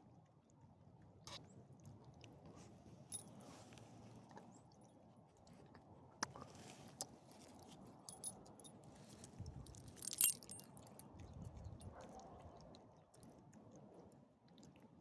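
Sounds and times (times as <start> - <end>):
metallic jingle: 9.7 - 10.7.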